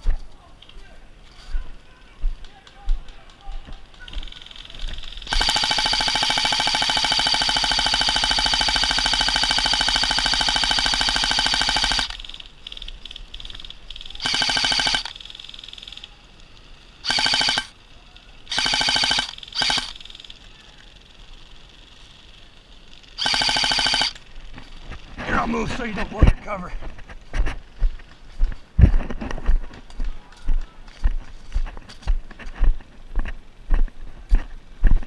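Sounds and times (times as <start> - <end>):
airsoft gun firing full auto: 4.1 - 12.4, 14.0 - 16.0, 17.0 - 17.8, 18.5 - 20.5, 23.2 - 24.2
whirring gearbox: 17.0 - 17.7, 18.5 - 20.3.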